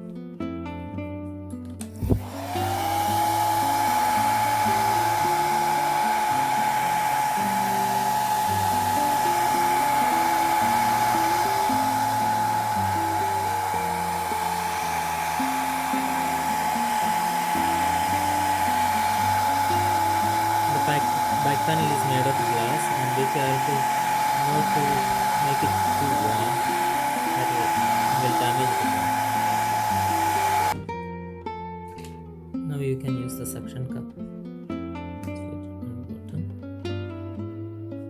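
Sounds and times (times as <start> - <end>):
soft guitar music: 0.0 - 38.0
hair dryer switch click: 1.8 - 19.7
hair dryer blowing: 1.8 - 30.8.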